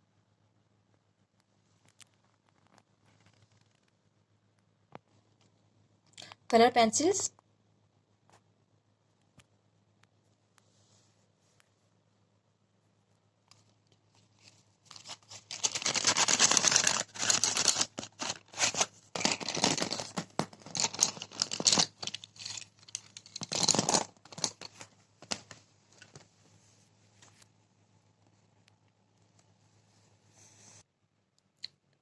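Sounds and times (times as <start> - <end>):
packaging tearing and crinkling: 14.9 - 25.4.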